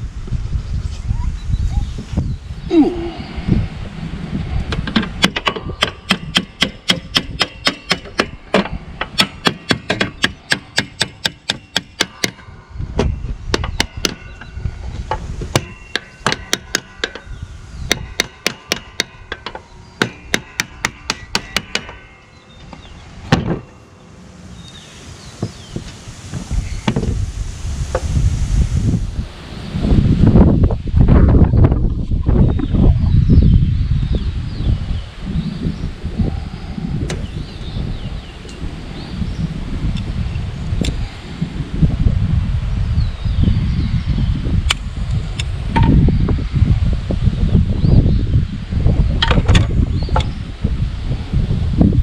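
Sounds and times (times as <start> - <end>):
hammer striking metal: 4.9 - 23.9.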